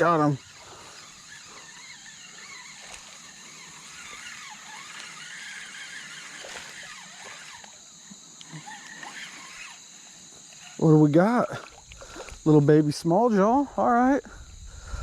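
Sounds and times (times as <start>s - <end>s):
crickets chorus: 0.0s - 15.0s.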